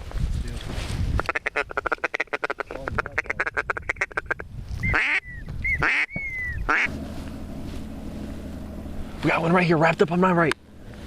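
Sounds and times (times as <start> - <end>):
duck call chatter: 1.2 - 6.9
duck call quacking notes: 1.2 - 6.9.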